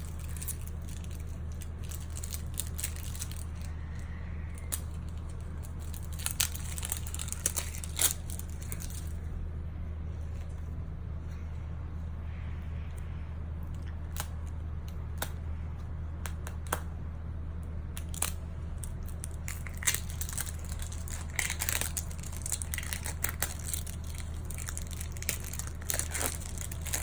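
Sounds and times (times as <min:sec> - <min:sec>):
wrapper crinkling and tearing: 0:00.0 - 0:09.2, 0:18.0 - 0:27.0
steady low hum: 0:00.0 - 0:27.0.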